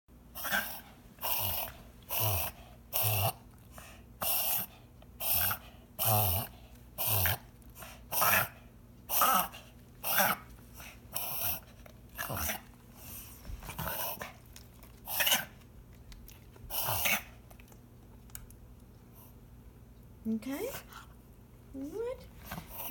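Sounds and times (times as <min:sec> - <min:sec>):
dog coughing: 0:16.7 - 0:17.3.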